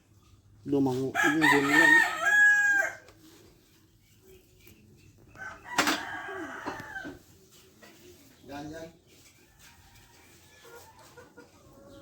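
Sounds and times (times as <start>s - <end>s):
rooster crowing: 1.2s - 3.0s, 5.4s - 7.2s.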